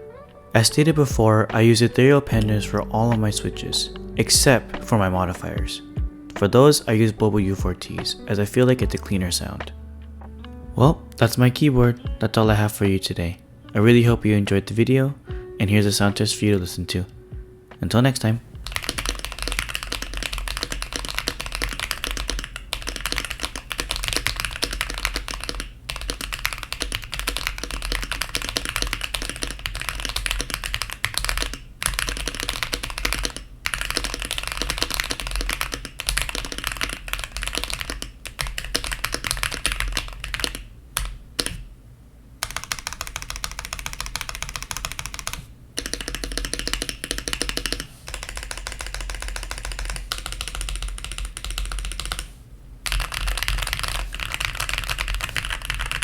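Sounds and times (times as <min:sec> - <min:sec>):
mechanical keyboard typing: 0:18.6 - 0:41.6, 0:42.4 - 0:56.0.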